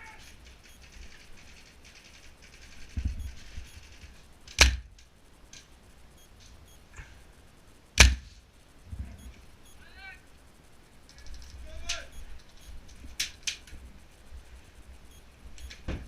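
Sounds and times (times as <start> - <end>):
airsoft rifle shots: 4.5 - 4.9.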